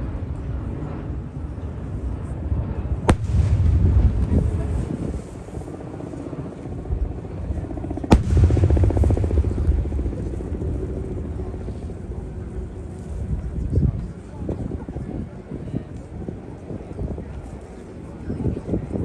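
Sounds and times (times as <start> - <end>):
rolling rumble echoing: 1.8 - 6.1, 6.7 - 13.3.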